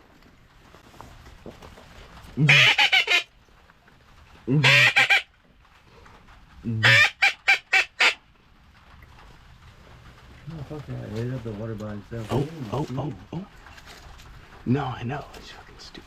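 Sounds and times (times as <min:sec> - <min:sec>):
duck call quacks: 0:02.4 - 0:03.3, 0:04.5 - 0:05.3, 0:06.7 - 0:08.2.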